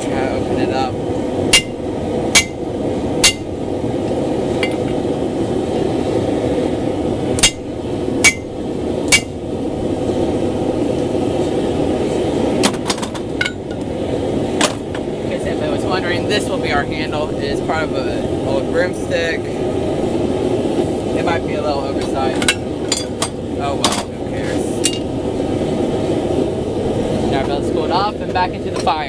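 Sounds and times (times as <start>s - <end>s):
forge running: 0.0s - 29.0s
hammer striking steel on anvil: 1.5s - 2.6s, 3.2s - 3.5s, 7.4s - 8.5s, 9.1s - 9.4s.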